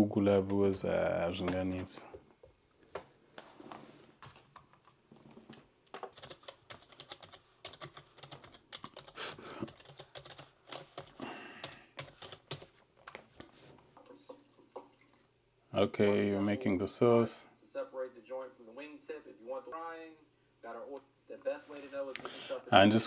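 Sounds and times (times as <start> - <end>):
keyboard typing: 5.9 - 12.8.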